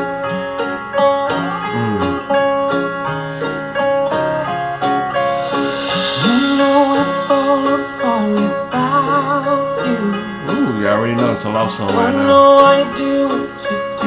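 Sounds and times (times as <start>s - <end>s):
country music with plucked guitar: 0.0s - 14.0s.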